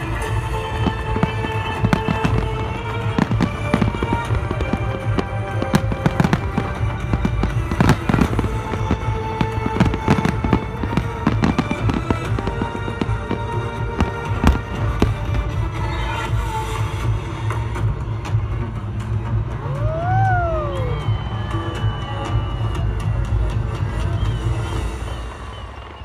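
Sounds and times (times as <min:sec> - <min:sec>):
fireworks bangs and cracks: 0:00.0 - 0:26.0
music playing: 0:00.0 - 0:26.0.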